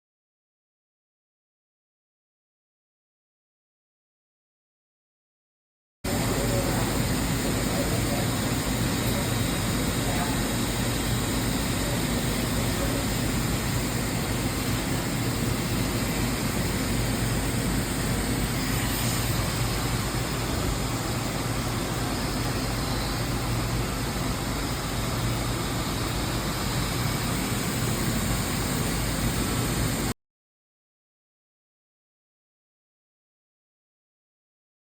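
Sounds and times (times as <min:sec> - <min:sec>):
machine humming with hiss: 0:06.1 - 0:30.2.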